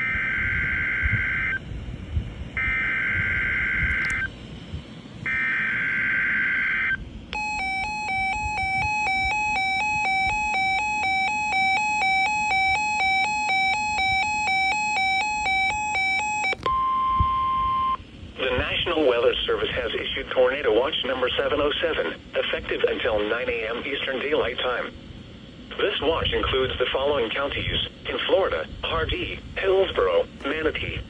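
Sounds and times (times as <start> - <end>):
alert radio alarm beep: 0.0 - 1.6, 2.6 - 4.3, 5.3 - 18.0.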